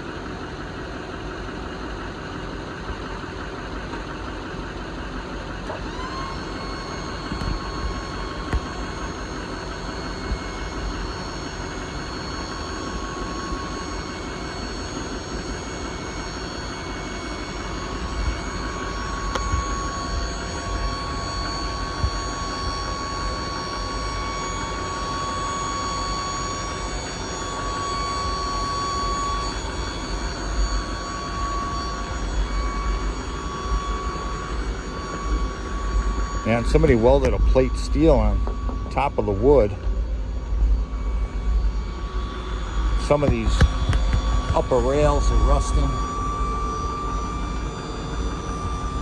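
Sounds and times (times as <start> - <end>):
hydraulic pump whining: 0.0 - 49.0
low rumble: 29.1 - 49.0.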